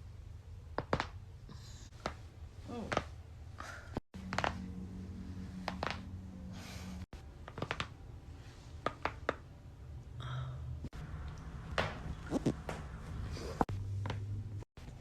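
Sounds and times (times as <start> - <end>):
neck joints cracking: 7.4 - 8.0, 8.8 - 9.4.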